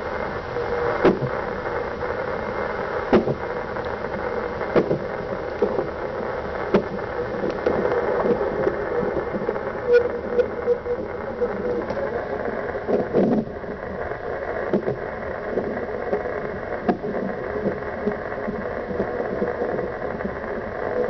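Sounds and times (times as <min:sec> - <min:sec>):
fetal doppler hiss: 0:00.0 - 0:21.0.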